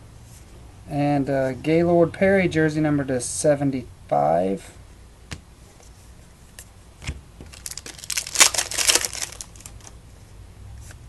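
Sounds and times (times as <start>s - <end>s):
wrapper tearing and crinkling: 7.5s - 10.0s.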